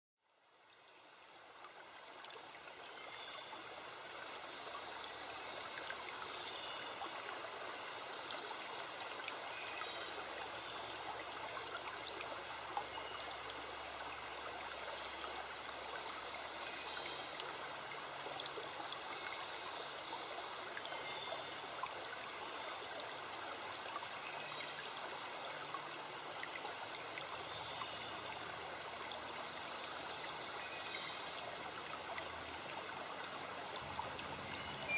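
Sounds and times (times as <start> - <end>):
forest stream flowing: 0.2 - 34.9.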